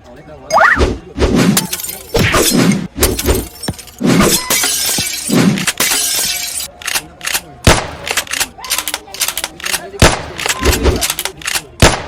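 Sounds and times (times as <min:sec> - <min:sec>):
glass shattering: 0:01.6 - 0:06.7.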